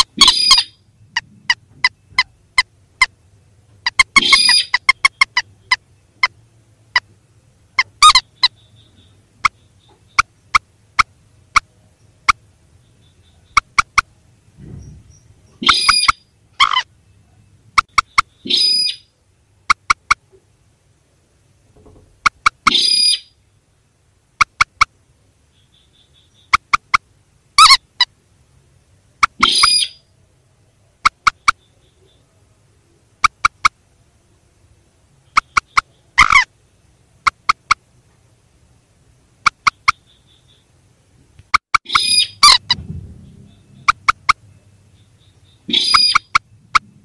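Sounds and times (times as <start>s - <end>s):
sharp bird ticks: 0.0s - 7.2s, 7.8s - 14.1s, 17.8s - 19.0s, 19.7s - 20.3s, 22.1s - 23.2s, 24.4s - 28.1s, 29.2s - 29.9s, 31.0s - 32.2s, 33.2s - 33.8s, 35.2s - 36.5s, 37.2s - 37.9s, 39.4s - 40.7s, 41.4s - 47.0s
harsh bird calls: 0.0s - 20.4s, 21.8s - 23.5s, 24.4s - 28.2s, 29.0s - 30.1s, 30.7s - 33.8s, 35.1s - 37.9s, 39.3s - 40.8s, 41.5s - 47.0s.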